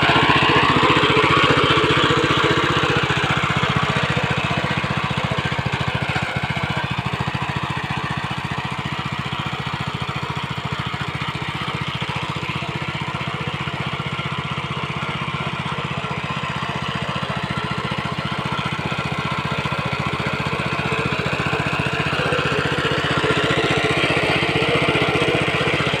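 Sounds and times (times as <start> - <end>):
small tractor engine running: 0.0 - 26.0.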